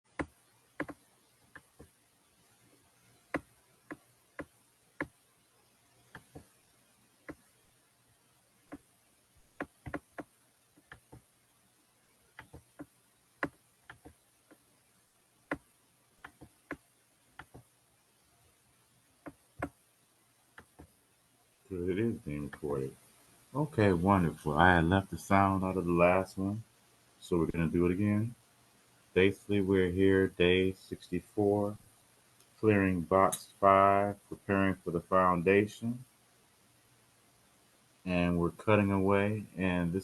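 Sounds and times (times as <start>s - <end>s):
faint clicks and taps: 0.1s - 2.0s, 2.7s - 5.2s, 6.0s - 6.6s, 7.2s - 7.5s, 8.7s - 8.9s, 9.5s - 11.3s, 12.3s - 14.7s, 15.5s - 17.7s, 19.2s - 19.8s, 20.5s - 21.0s, 22.4s - 22.7s.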